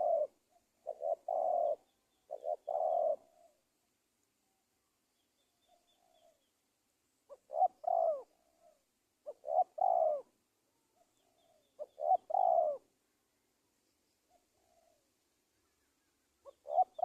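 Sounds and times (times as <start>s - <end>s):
dove cooing: 0.0s - 3.6s, 7.3s - 10.4s, 11.0s - 12.9s, 14.3s - 15.1s, 16.4s - 17.0s.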